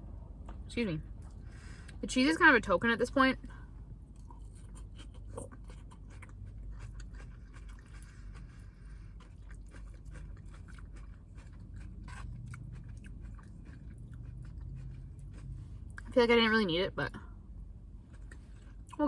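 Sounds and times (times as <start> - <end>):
person chewing crunchy salad: 4.1 - 16.1, 17.9 - 19.0.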